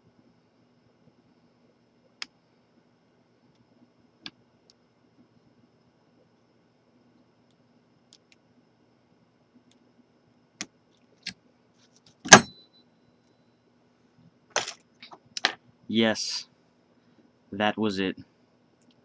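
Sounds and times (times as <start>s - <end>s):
short metallic ring: 12.3s - 12.8s.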